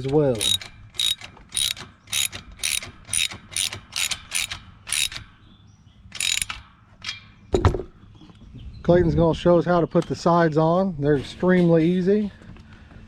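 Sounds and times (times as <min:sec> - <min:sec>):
socket wrench ratchet clicking: 0:00.0 - 0:05.2, 0:06.1 - 0:06.6.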